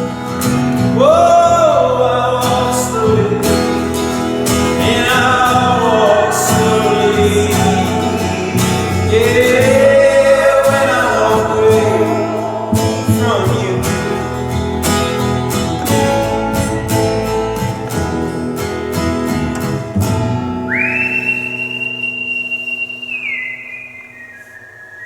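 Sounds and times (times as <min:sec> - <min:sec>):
voices singing long notes: 0:00.0 - 0:18.6, 0:20.7 - 0:25.0
acoustic guitar plucked and strummed: 0:00.0 - 0:24.5
whistled note sliding up: 0:20.7 - 0:25.0.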